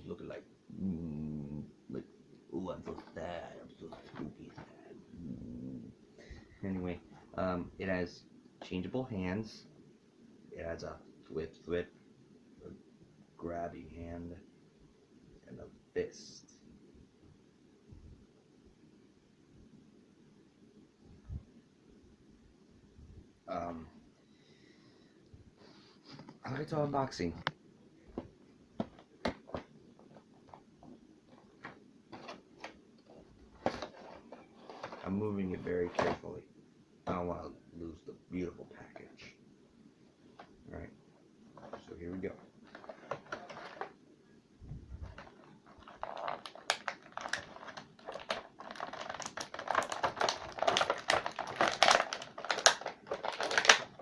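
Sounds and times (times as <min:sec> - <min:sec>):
plastic and cardboard crinkling: 0:02.8 - 0:04.9, 0:28.1 - 0:36.2, 0:41.5 - 0:44.0, 0:45.0 - 0:54.0.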